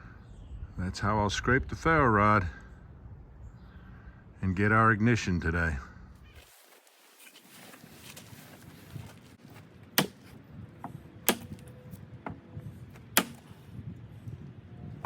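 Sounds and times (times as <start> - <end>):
sharp knocks: 10.0 - 11.6.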